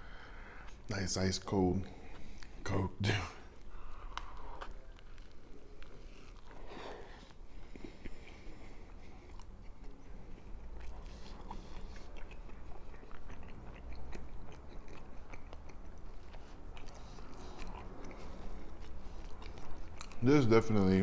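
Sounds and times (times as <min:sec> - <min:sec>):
person chewing crunchy food: 0:03.5 - 0:21.0.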